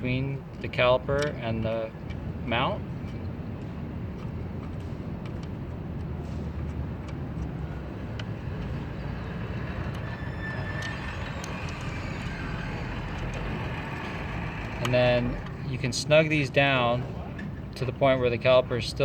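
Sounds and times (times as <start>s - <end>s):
low traffic rumble: 0.0s - 19.0s
small clicks of washers and bolts: 0.6s - 2.2s, 4.1s - 8.8s.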